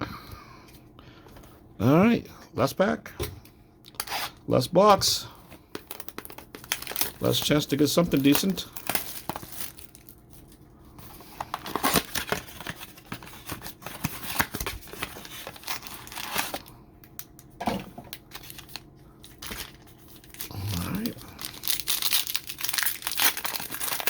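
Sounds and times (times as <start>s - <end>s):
foil wrapper tearing: 5.7s - 16.7s, 18.1s - 24.0s
packaging crinkling: 5.7s - 17.5s, 18.1s - 24.0s.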